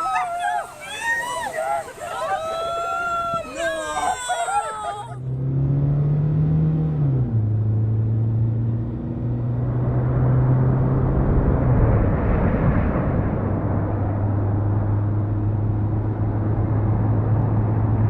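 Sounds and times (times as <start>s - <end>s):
engine-like hum: 4.2s - 18.0s.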